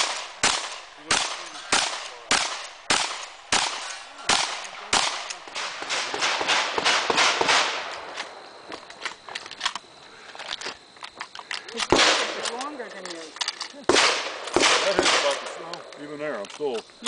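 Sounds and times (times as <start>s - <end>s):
gunshot echoes: 0.0s - 7.9s, 11.9s - 12.4s, 13.9s - 15.5s
shotgun shots: 0.0s - 8.1s, 11.9s - 12.6s, 13.9s - 15.6s.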